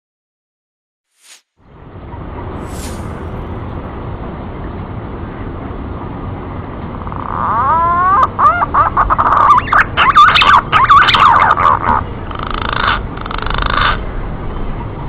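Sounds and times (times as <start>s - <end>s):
harsh bird calls: 7.0s - 14.1s
bird warbling: 7.2s - 14.0s.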